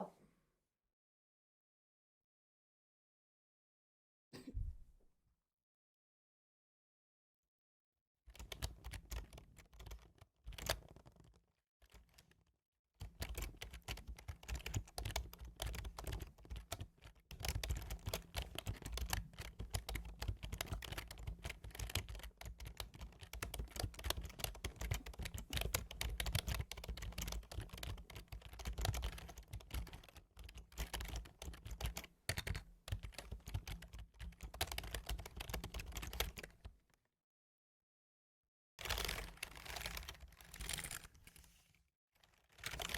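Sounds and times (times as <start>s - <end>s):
computer keyboard typing: 8.4s - 11.0s, 13.0s - 36.4s.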